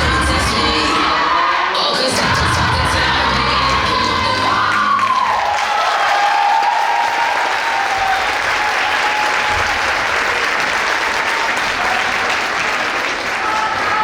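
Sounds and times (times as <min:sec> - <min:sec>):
voices shouting and cheering: 0:00.0 - 0:09.8
audience applauding: 0:03.4 - 0:14.0.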